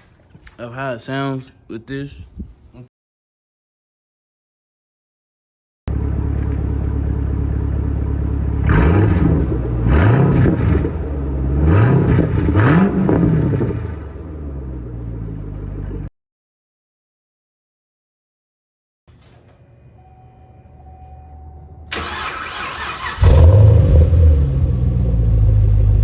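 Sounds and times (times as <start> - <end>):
car engine idling: 5.9 - 8.8, 21.9 - 26.0
engine revving: 8.2 - 14.9, 22.0 - 26.0.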